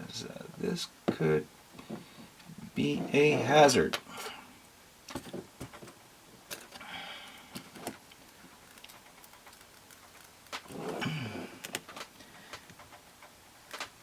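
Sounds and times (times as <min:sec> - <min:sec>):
small clicks and snaps: 0:07.8 - 0:10.7, 0:11.6 - 0:14.0.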